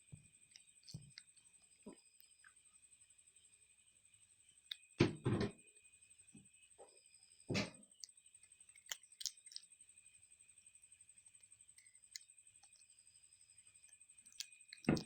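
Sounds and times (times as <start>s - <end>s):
cat chewing crunchy food: 0.4s - 2.6s, 8.0s - 9.7s, 11.4s - 15.0s.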